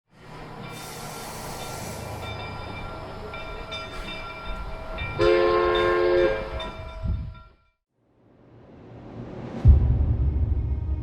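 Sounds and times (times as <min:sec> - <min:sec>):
train rumbling: 0:00.1 - 0:07.6
multi-note train whistle: 0:05.2 - 0:06.6.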